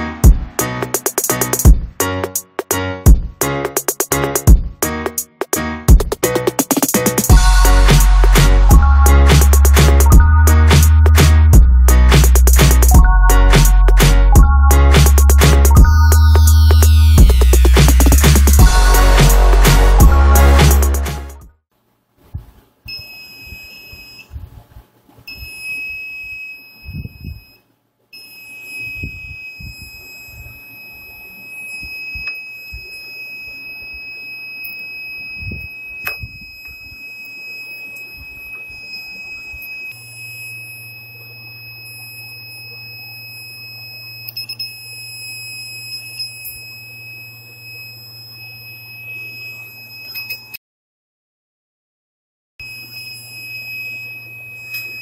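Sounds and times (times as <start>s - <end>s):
door alarm buzzer tone: 22.9s - 24.3s, 25.3s - 50.6s, 52.6s - 55.0s.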